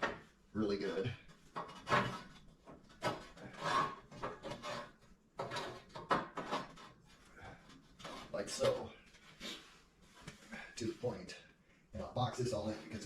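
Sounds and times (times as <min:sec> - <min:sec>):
objects scraping and knocking: 0:00.9 - 0:10.6.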